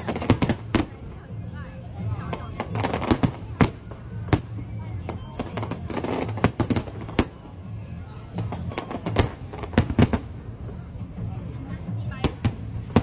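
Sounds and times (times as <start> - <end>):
fireworks bursting bangs: 0.0 - 1.2, 2.0 - 7.6, 8.3 - 10.8, 12.0 - 13.0.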